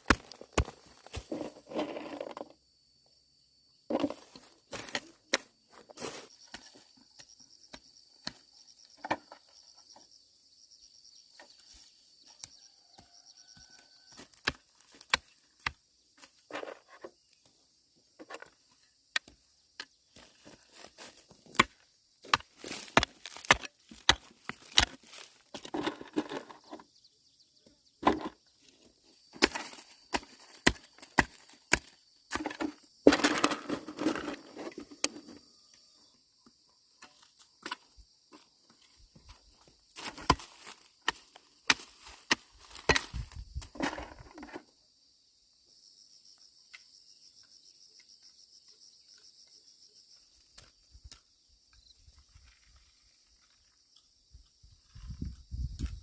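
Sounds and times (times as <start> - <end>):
hand tool chopping: 0.0 - 1.5, 21.5 - 25.7, 29.4 - 33.7.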